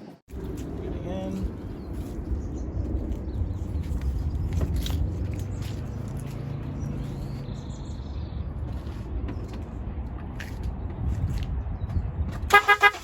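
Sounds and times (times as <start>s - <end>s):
car horn pulsing: 12.5s - 13.0s.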